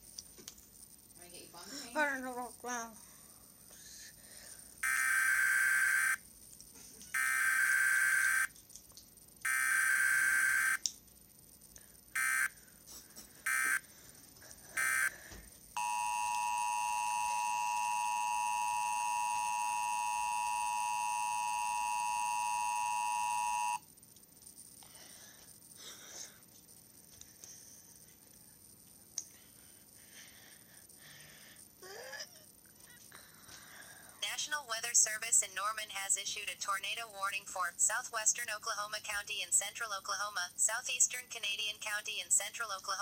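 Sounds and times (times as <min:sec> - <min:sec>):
screeching data bursts: 0:07.2 - 0:08.5, 0:09.5 - 0:10.8, 0:12.2 - 0:12.5, 0:13.5 - 0:13.8, 0:14.8 - 0:15.1, 0:15.8 - 0:23.8
steady attention tone: 0:12.2 - 0:12.6, 0:14.8 - 0:15.2, 0:15.8 - 0:23.8.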